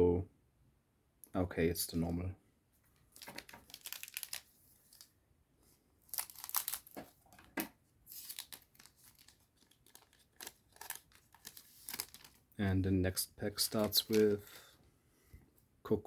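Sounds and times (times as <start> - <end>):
foil wrapper tearing and crinkling: 3.2 - 5.1, 6.1 - 7.0, 8.1 - 12.4.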